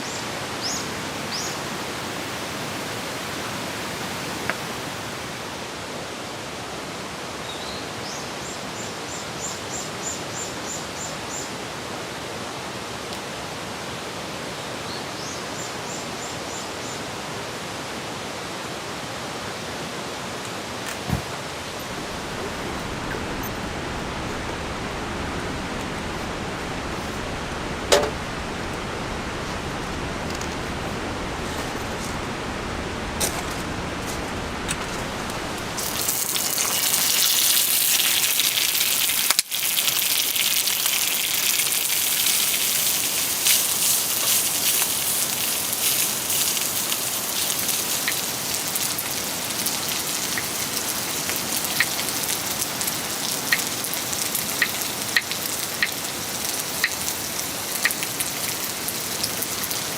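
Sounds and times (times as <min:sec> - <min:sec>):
hissy rainfall: 0:00.0 - 0:59.9
steady rushing noise: 0:20.9 - 0:36.4
raindrops pattering on a surface: 0:21.8 - 0:59.9.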